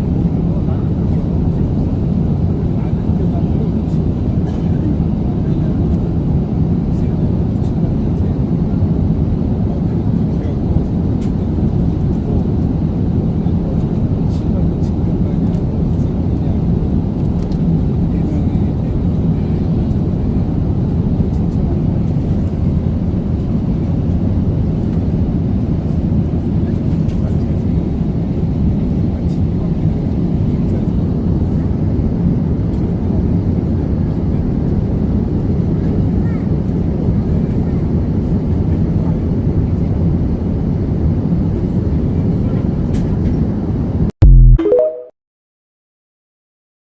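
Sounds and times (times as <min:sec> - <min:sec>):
airliner cabin drone: 0:00.0 - 0:44.4
notes stepping up in pitch: 0:44.2 - 0:45.1
short electronic burst: 0:44.2 - 0:45.1.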